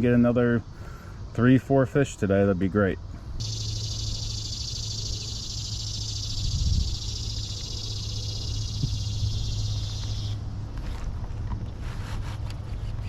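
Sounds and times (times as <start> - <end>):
high-pitched animal buzzing: 3.4 - 10.4
low hum: 3.4 - 11.6.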